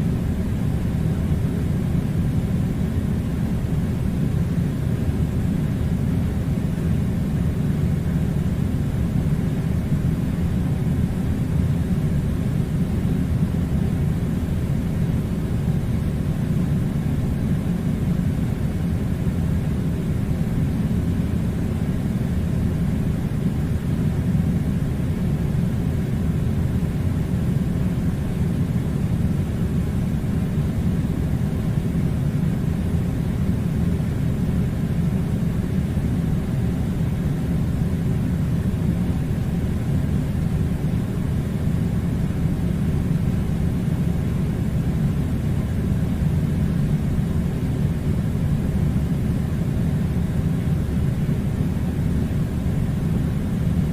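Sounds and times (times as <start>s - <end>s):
air conditioner humming: 0.0s - 53.9s.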